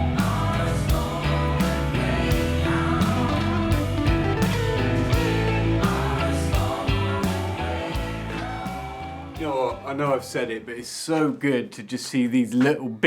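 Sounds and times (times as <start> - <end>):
rock music with guitar: 0.0 - 10.0.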